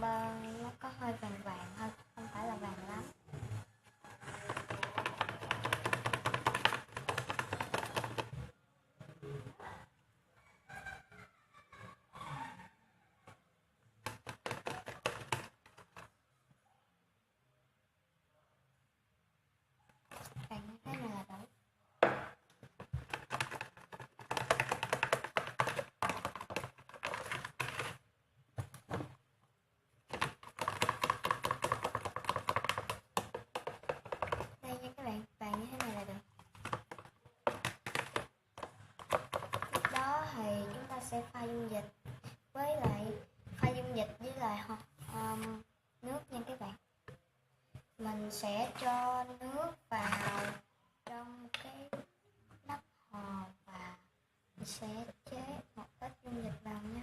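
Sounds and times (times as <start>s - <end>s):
stick tapping plastic container: 4.2s - 8.4s, 14.0s - 16.1s, 22.0s - 28.0s, 30.1s - 34.6s, 35.4s - 40.2s, 50.0s - 50.6s.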